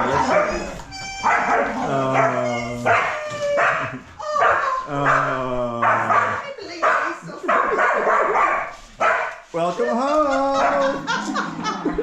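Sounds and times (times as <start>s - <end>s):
dogs whining and yelping: 0.0s - 5.3s
dogs barking: 0.0s - 9.5s, 10.5s - 12.0s.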